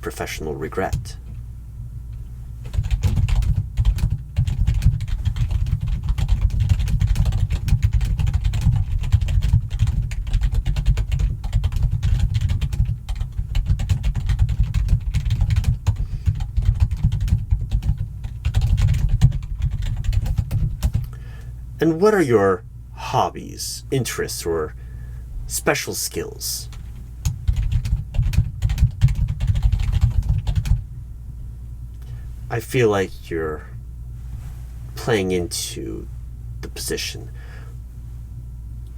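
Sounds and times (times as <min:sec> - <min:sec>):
typing on computer keyboard: 0:02.7 - 0:21.0, 0:27.2 - 0:30.8.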